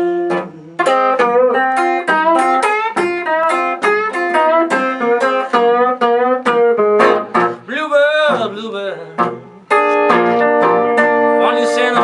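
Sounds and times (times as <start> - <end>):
person singing: 0.0 - 2.5, 7.6 - 10.3, 11.3 - 12.0
blues guitar plucked notes: 0.0 - 12.0.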